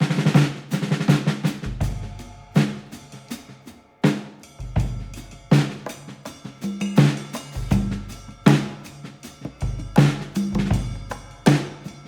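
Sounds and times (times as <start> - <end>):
drum-led background music: 0.0 - 12.0.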